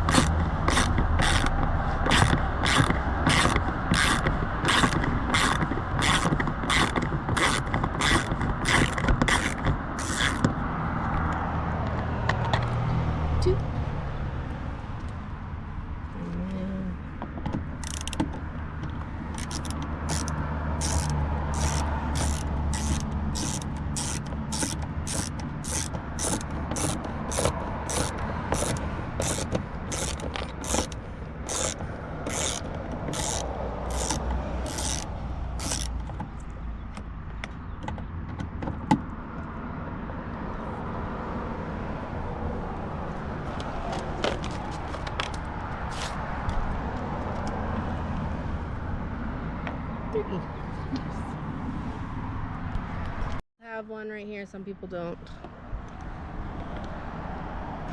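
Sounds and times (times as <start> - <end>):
ratchet wrench clicking: 0.0 - 10.6, 17.8 - 18.3, 19.3 - 36.1.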